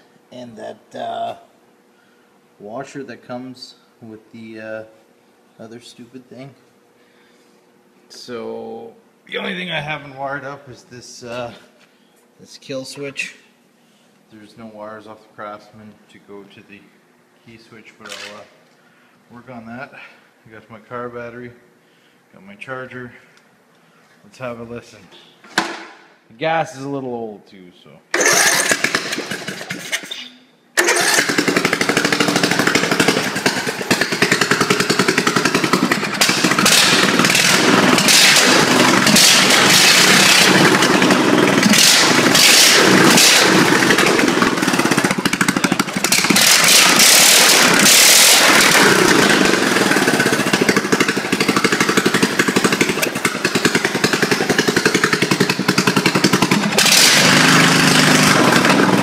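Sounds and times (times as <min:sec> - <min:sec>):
small gas engine revving: 0:28.1 - 0:29.9, 0:30.8 - 0:59.0.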